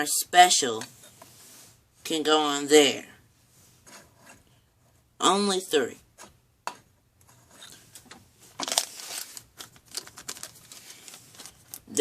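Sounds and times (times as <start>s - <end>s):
plastic packaging crinkling: 8.5s - 12.0s.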